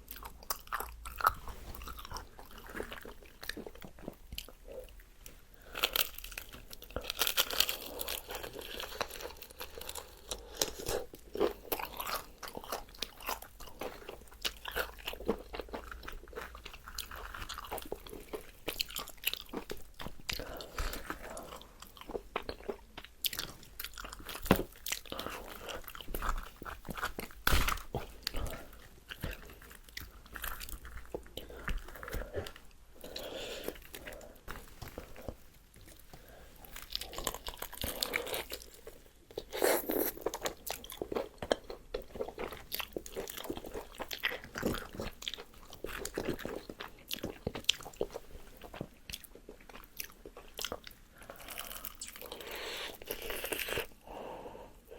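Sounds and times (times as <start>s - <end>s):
crunchy chewing: 0.0s - 5.0s, 5.6s - 54.0s.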